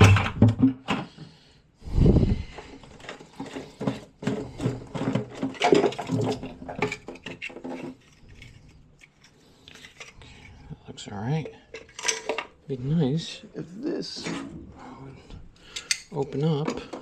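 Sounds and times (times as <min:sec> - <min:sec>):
wrench and metal fittings clanking: 0:11.4 - 0:12.6, 0:15.6 - 0:17.0.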